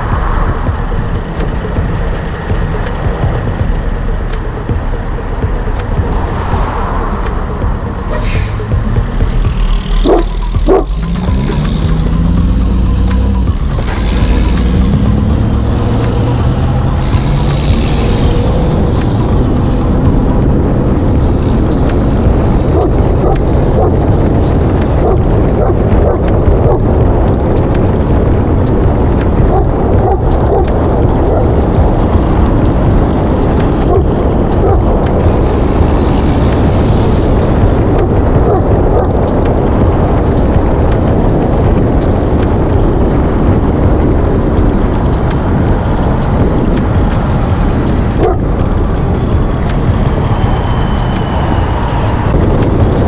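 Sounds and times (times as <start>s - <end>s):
truck road and engine rumble: 0.0s - 53.0s
dog bark: 10.0s - 10.9s
dog barking: 10.0s - 10.9s, 29.5s - 30.7s, 48.2s - 48.4s.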